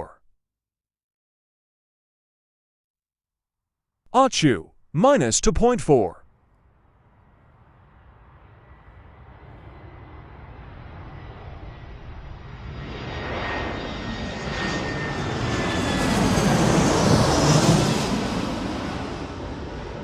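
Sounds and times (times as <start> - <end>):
rushing aircraft engine passing: 6.8 - 20.0.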